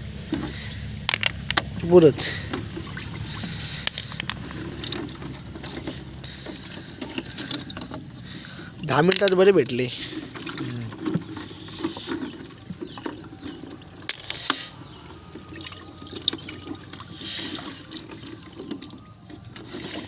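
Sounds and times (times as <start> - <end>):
water trickling and splashing: 0.0 - 20.0.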